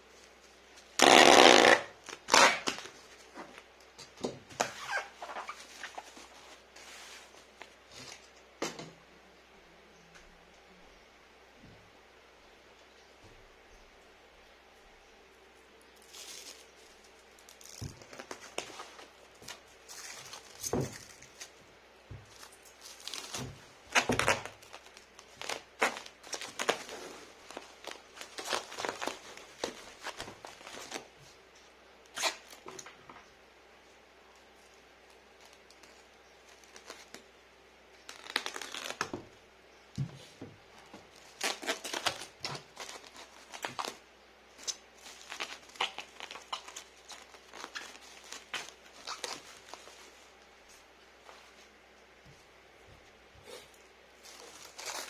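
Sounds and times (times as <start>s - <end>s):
plastic wrapping crinkling and tearing: 0.2s - 3.7s, 16.0s - 21.6s, 22.2s - 31.1s, 35.1s - 37.3s, 38.1s - 39.2s, 41.0s - 50.4s, 54.2s - 55.0s.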